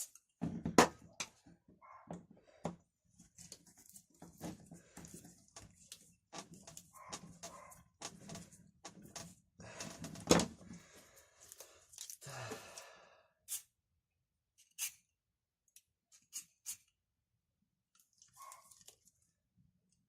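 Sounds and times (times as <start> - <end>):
rustling and scraping of parts: 3.1 - 12.2.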